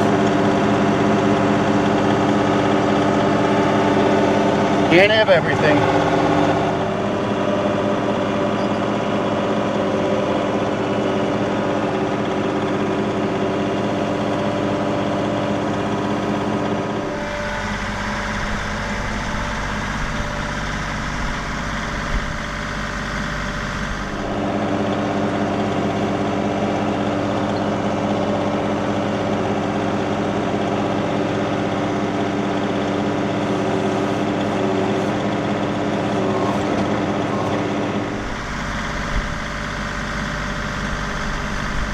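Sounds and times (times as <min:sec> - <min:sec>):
tractor diesel engine running: 0:00.0 - 0:41.9.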